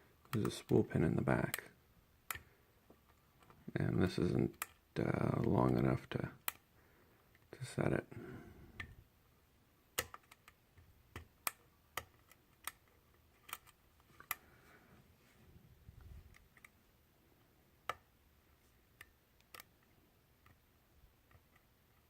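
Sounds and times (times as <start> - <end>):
lock picking metallic clicks: 9.9 - 14.4.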